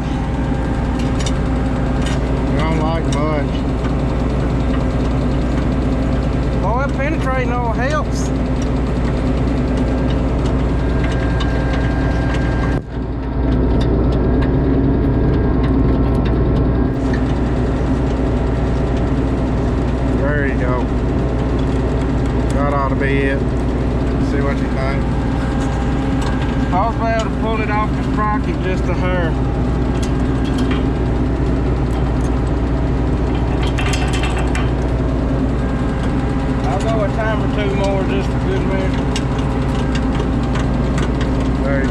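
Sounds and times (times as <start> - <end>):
engine running: 0.0 - 41.9.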